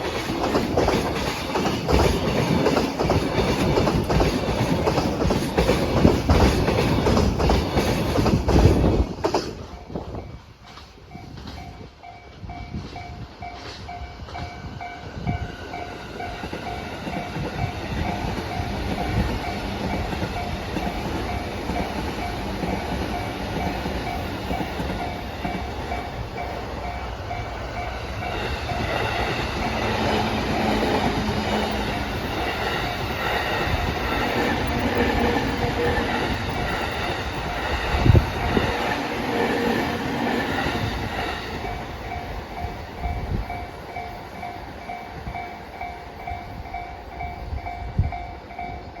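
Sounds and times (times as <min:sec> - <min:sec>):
wheels clacking over rail joints: 0:00.0 - 0:09.9
freight train rumbling: 0:00.0 - 0:49.0.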